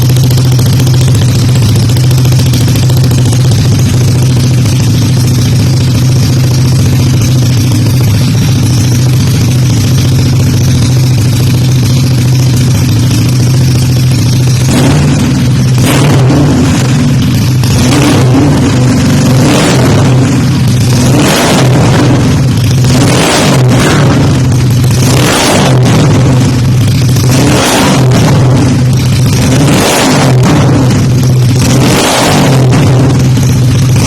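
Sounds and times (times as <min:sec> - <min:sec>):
scooter engine revving: 0:00.0 - 0:34.0.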